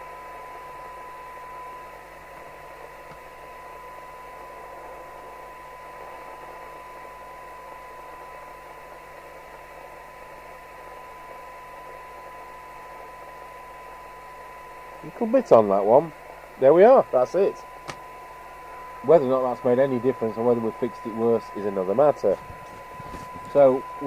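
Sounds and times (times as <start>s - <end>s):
radio hiss: 15.0s - 24.0s
steady pure test tone: 15.0s - 24.0s.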